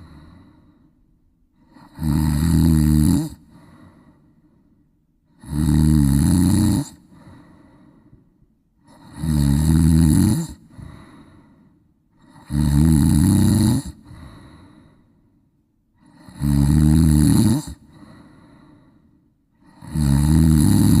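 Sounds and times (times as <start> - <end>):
loud rasping snoring: 1.6 - 3.6, 5.3 - 7.3, 8.8 - 11.2, 12.2 - 14.6, 16.0 - 18.2, 19.6 - 21.0.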